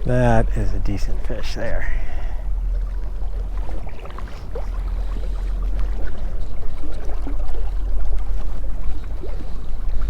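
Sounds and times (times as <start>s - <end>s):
flowing river water: 0.0s - 10.0s
faint ticks and splashes: 0.2s - 10.0s.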